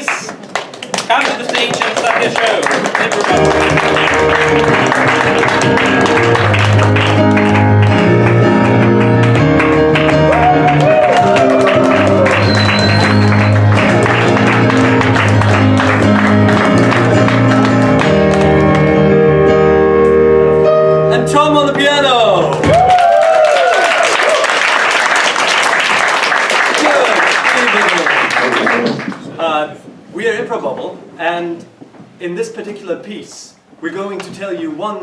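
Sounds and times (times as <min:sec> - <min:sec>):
held bass notes: 0:03.3 - 0:22.9.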